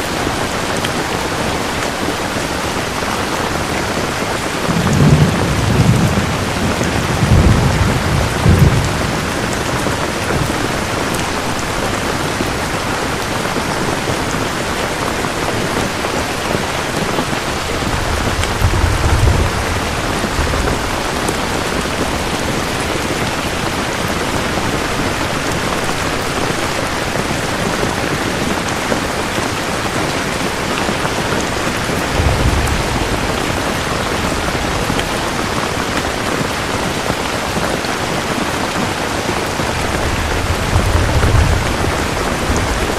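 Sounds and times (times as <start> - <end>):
steady rain falling: 0.0 - 42.9
low rumbles of thunder: 4.4 - 12.8, 17.3 - 23.6, 31.4 - 36.2, 39.6 - 42.9.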